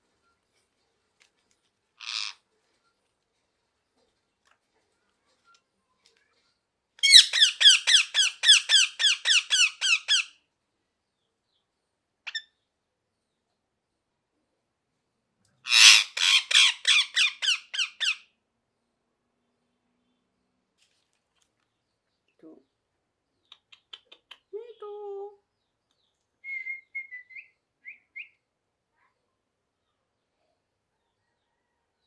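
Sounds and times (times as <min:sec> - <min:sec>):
parakeet screeching: 0:02.0 - 0:02.4, 0:07.0 - 0:10.3, 0:15.7 - 0:18.2.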